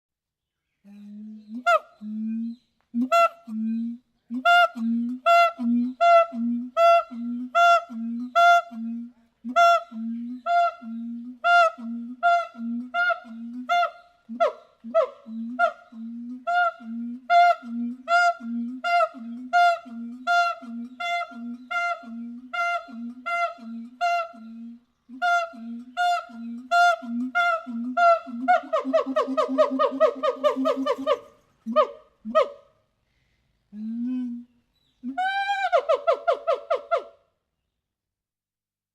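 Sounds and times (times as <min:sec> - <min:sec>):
monkey hooting: 0:25.2 - 0:32.6.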